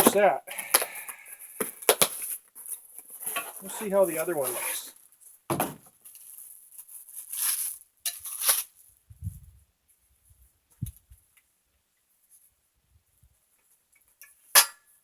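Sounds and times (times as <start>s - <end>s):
scraping rustles of parts: 1.4s - 8.9s.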